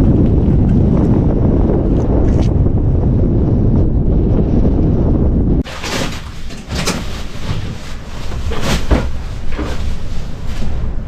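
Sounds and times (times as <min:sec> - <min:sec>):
low wind rumble: 0:00.0 - 0:11.0
scraping and brushing on sandy floor: 0:05.6 - 0:11.0.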